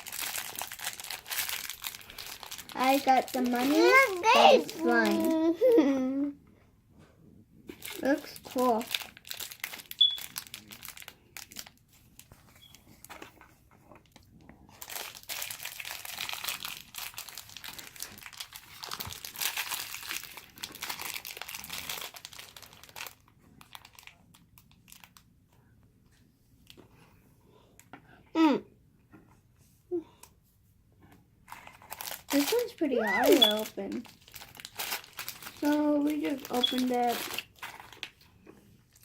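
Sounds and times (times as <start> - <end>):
wrapper crinkling: 0.0 - 6.0, 7.7 - 25.3, 31.4 - 39.0.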